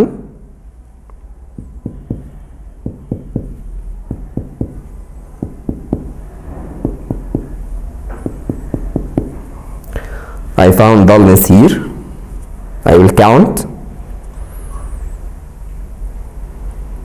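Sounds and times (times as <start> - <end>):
finger tapping on ribs: 1.6 - 4.8.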